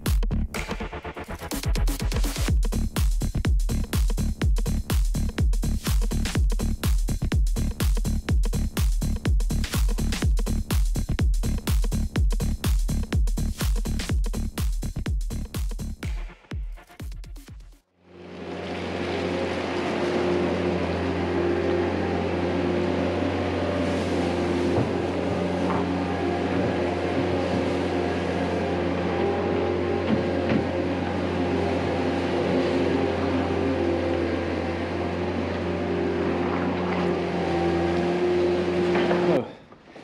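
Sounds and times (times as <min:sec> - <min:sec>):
engine droning steadily: 0:18.1 - 0:39.6.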